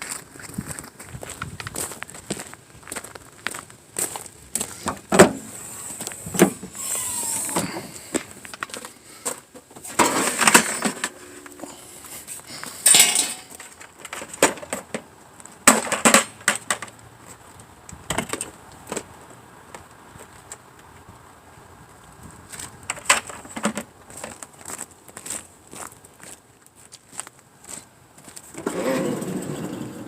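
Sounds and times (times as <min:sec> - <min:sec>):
objects knocking and clattering: 0:07.6 - 0:11.8, 0:12.8 - 0:17.0, 0:22.9 - 0:24.3.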